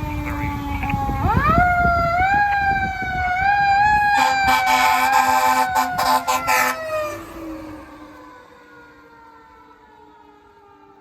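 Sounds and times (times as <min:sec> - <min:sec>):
mechanical siren wailing: 0:00.0 - 0:11.0
air horn blasts: 0:04.0 - 0:07.0.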